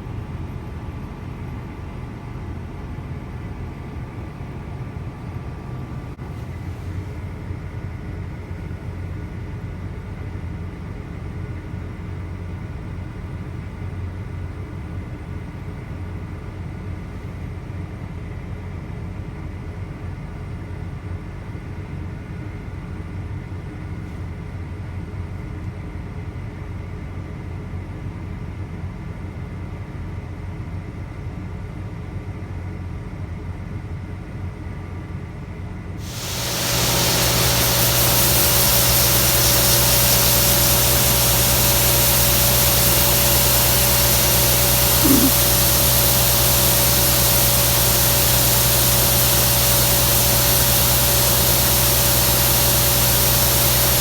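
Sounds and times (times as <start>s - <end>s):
harvester engine drone: 36.0s - 54.0s
loud even hiss: 36.0s - 54.0s
steady machine hum: 36.0s - 54.0s.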